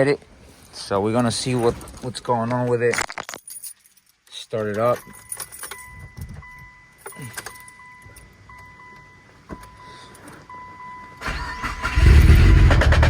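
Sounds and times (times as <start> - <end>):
car engine starting and running: 11.2 - 13.0.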